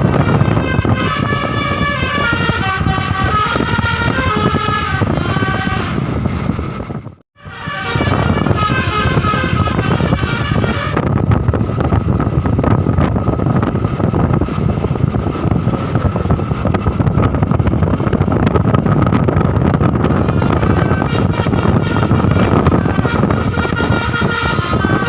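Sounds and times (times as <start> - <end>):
bus horn melody: 0.0 - 6.8, 7.4 - 11.2, 20.0 - 25.0
bus rumbling past: 0.0 - 25.0
wind buffeting microphone: 0.0 - 25.0.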